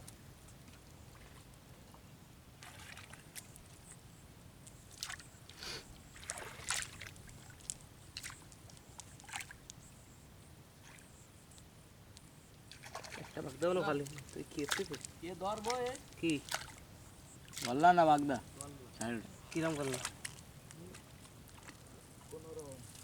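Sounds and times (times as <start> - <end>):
water sloshing and splashing: 0.6 - 1.6, 2.6 - 3.9, 4.8 - 9.7, 12.7 - 23.0.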